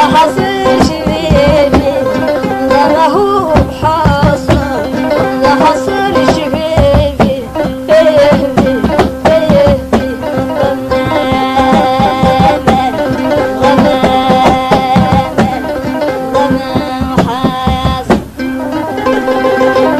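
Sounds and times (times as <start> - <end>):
plucked string instrument: 0.0 - 19.9
steady beat: 0.0 - 19.9.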